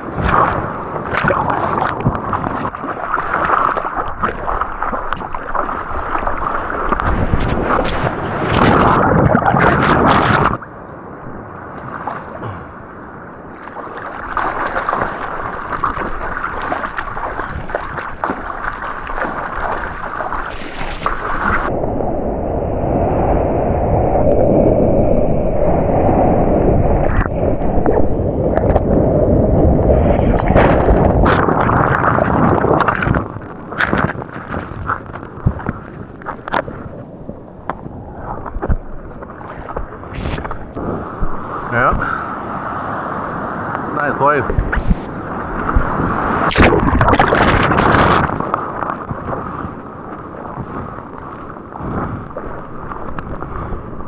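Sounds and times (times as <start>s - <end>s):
rushing noise on microphone: 0.0s - 10.6s, 14.2s - 54.0s
water sloshing and splashing: 0.0s - 10.7s, 11.7s - 12.8s, 13.4s - 21.7s, 29.6s - 41.7s, 44.5s - 54.0s.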